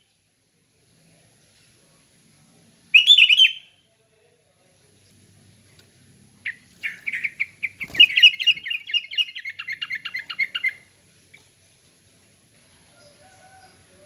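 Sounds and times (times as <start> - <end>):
bird chirping song: 2.9 - 3.8, 4.9 - 14.0.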